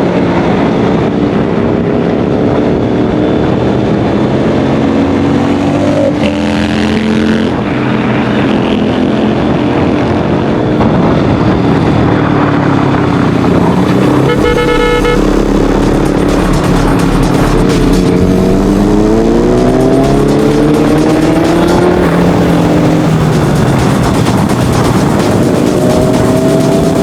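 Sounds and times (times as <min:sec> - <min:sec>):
motorcycle engines accelerating: 0:00.0 - 0:27.0
steady multi-tone sound: 0:13.0 - 0:27.0.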